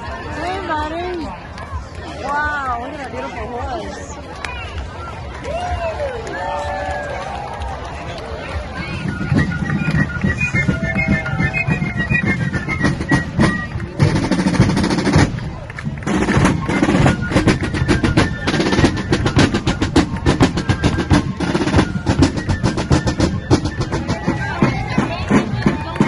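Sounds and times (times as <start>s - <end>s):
held wind instrument notes: 8.2s - 26.0s
marching snare drums: 8.8s - 26.0s.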